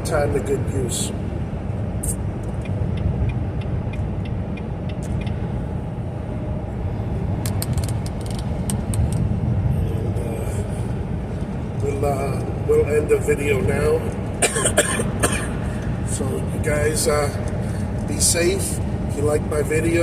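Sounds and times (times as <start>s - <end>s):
truck engine and road rumble: 0.0s - 20.0s
light clicks and rattles: 7.4s - 9.3s.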